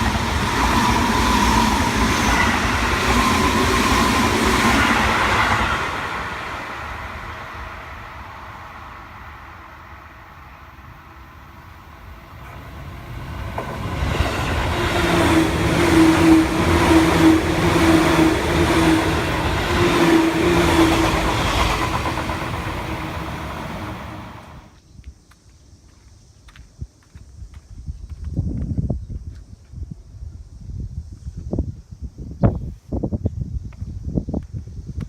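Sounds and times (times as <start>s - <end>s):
electric train passing: 0.0s - 24.8s.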